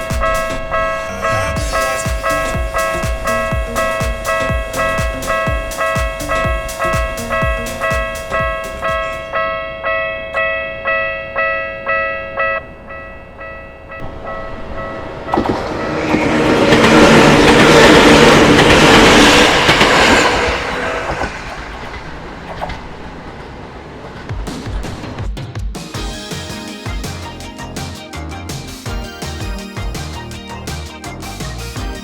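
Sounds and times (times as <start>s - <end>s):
level-crossing warning bell: 0.0s - 21.0s
train passing: 0.0s - 25.1s.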